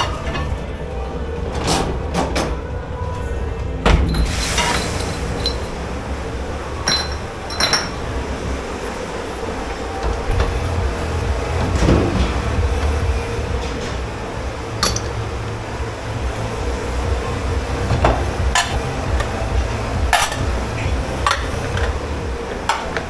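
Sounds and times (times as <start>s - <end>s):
low rumble of dishwashing machinery: 0.0s - 23.0s
dishes and glassware clinking: 3.9s - 5.8s, 6.8s - 8.2s, 14.8s - 15.4s, 17.9s - 23.0s.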